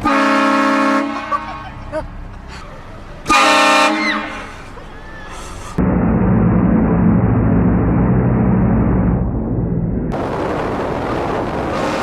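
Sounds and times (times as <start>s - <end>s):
vehicle engine running: 5.5s - 10.4s
broad rushing noise: 10.1s - 12.0s.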